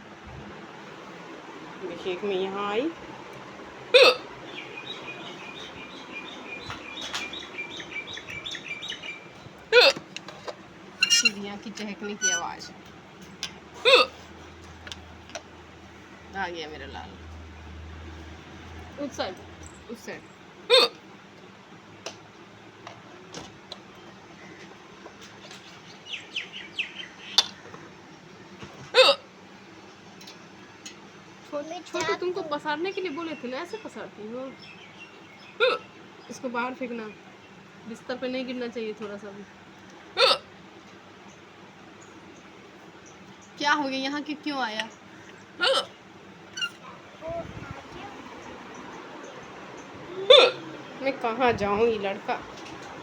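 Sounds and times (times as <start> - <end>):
small birds chirping: 3.8 - 10.0, 11.0 - 12.7, 19.0 - 21.0, 23.8 - 29.1, 31.4 - 53.0
woman hiccuping: 3.9 - 4.3, 9.7 - 10.0, 13.8 - 14.2, 20.7 - 21.0, 29.0 - 29.2, 35.6 - 35.9, 40.2 - 40.5, 45.6 - 45.9, 50.2 - 50.7
small bird chirping: 4.0 - 10.0, 11.0 - 11.4.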